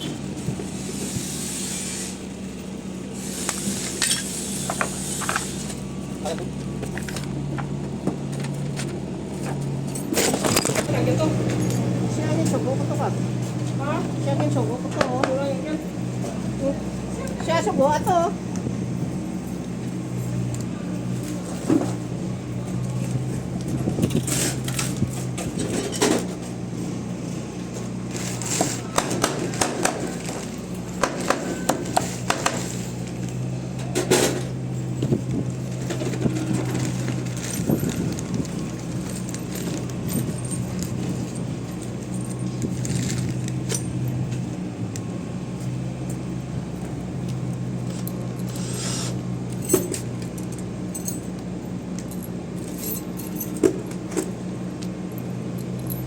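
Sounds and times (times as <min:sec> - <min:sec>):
steady low hum: 0:00.0 - 0:56.0
metallic clinks and knocks: 0:52.0 - 0:56.0.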